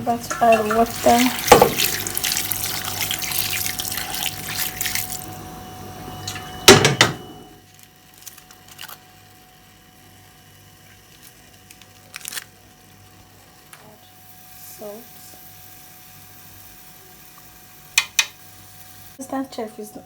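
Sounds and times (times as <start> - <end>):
tap water running: 0.0 - 7.1, 17.3 - 18.4
pots and utensils clattering: 0.1 - 2.8.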